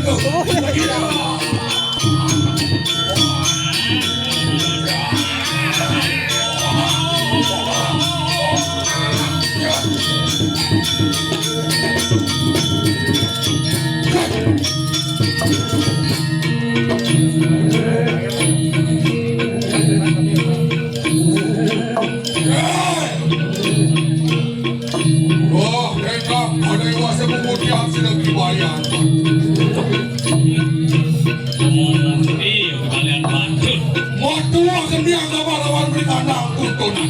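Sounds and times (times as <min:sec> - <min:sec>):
jingling rattling percussion: 0:00.0 - 0:37.0
pitched percussion tones: 0:00.0 - 0:37.0.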